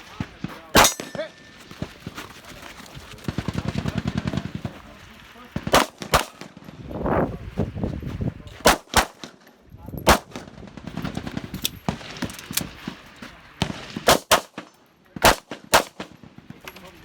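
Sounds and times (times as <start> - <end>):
pistol shots: 0.2 - 1.8, 5.6 - 6.7, 8.6 - 9.5, 10.1 - 12.7, 13.6 - 16.3.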